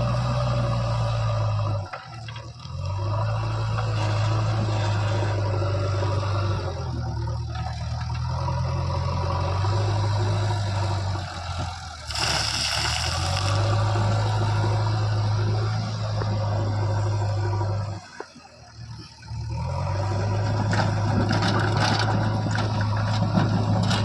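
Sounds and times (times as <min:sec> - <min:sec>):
heavy machinery diesel engine drone: 0:00.0 - 0:24.0
burst of hissing: 0:12.0 - 0:13.6.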